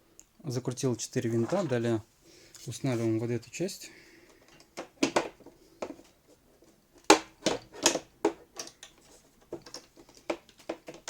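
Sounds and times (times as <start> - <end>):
plastic parts knocking and clicking: 4.3 - 11.0.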